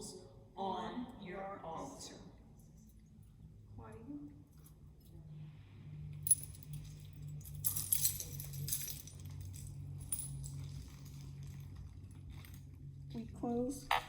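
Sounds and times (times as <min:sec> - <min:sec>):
steady low hum: 0:00.0 - 0:14.0
jangling rattles: 0:06.2 - 0:12.6.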